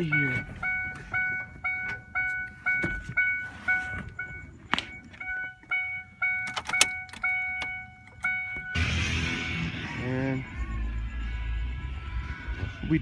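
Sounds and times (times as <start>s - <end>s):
car warning chime dinging: 0.0s - 13.0s.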